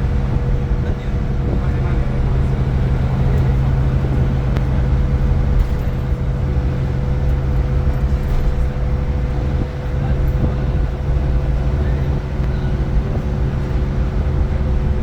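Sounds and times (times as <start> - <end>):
bus diesel engine drone: 0.0 - 15.0.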